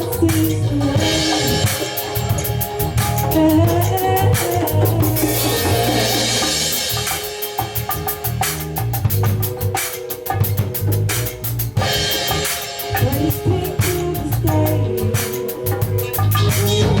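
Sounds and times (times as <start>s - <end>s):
band playing: 0.0s - 17.0s
drum kit steady beat: 0.0s - 17.0s
cymbal washes: 1.0s - 14.2s.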